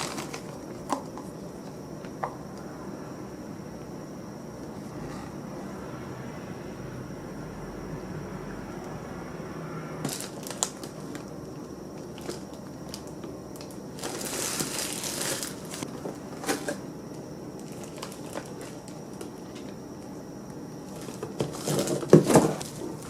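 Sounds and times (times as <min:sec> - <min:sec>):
rustling and crinkling: 0:00.0 - 0:01.8, 0:10.0 - 0:11.3, 0:12.0 - 0:16.8, 0:17.6 - 0:19.7, 0:20.9 - 0:23.0.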